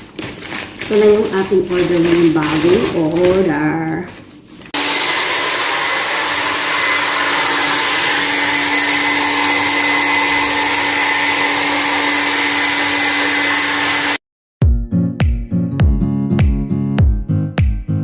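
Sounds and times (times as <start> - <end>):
hair dryer blowing: 4.8 - 14.2.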